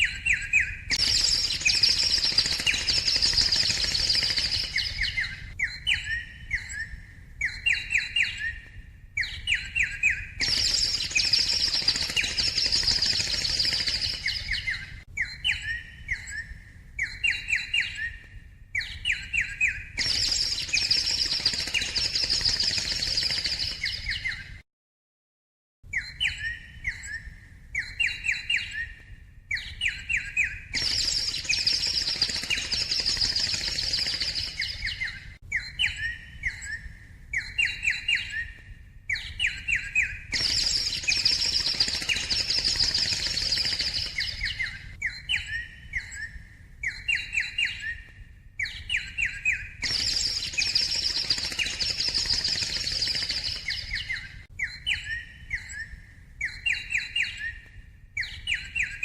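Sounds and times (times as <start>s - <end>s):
quick sharp bird chirps: 0.0s - 8.6s, 9.3s - 18.2s, 18.8s - 24.6s, 29.6s - 38.5s, 39.2s - 48.1s, 48.7s - 57.6s
dense high bird twittering: 0.0s - 24.6s, 26.0s - 59.0s.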